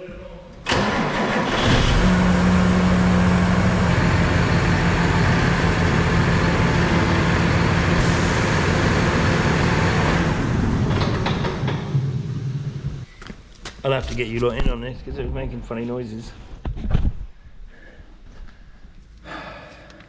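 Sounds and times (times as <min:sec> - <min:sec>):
engine running steadily: 0:00.8 - 0:13.1.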